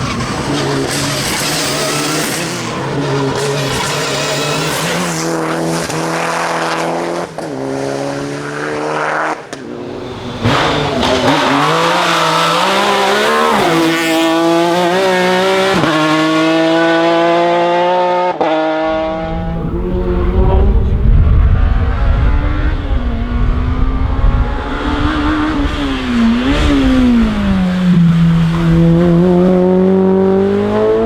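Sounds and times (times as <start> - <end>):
race car engine at full throttle: 0.0 - 31.0
low rumble: 18.9 - 25.5.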